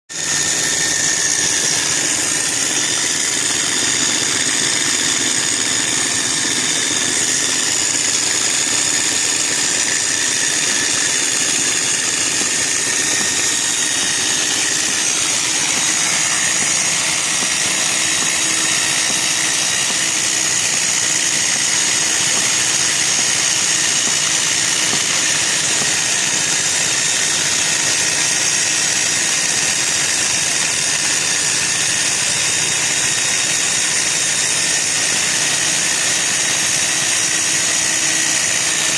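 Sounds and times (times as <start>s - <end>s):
rock drill boring into stone: 0.1s - 38.9s.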